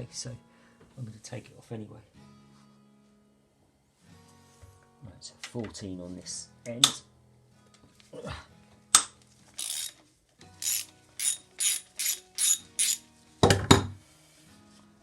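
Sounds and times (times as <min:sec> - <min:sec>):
ratchet wrench clicking: 0:09.6 - 0:10.0, 0:10.6 - 0:13.0.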